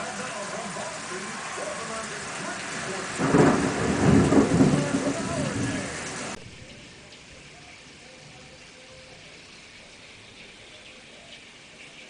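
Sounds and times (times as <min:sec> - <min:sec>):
steady rain: 0:00.0 - 0:12.0
thunderclap rumbling: 0:02.1 - 0:06.6.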